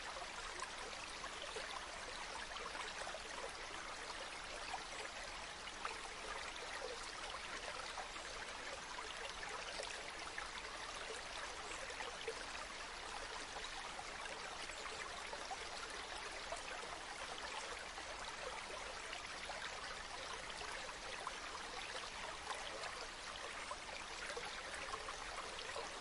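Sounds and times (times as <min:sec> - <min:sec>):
stream burbling and splashing: 0:00.0 - 0:26.0.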